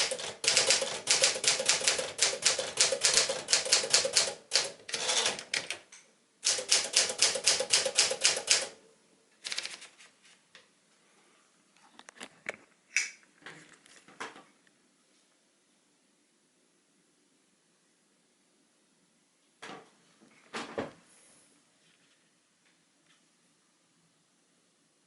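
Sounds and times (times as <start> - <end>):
typewriter key strikes: 0.0 - 5.8, 6.4 - 8.8
typewriter clicks and knocks: 0.0 - 8.8.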